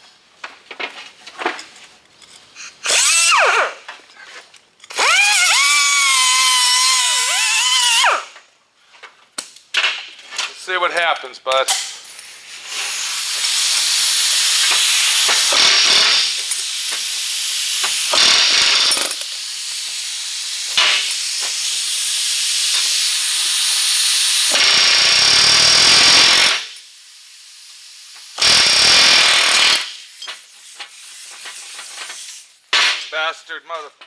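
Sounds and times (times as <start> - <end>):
power grinder grinding metal: 13.4 - 17.0, 22.7 - 26.7, 28.4 - 30.0.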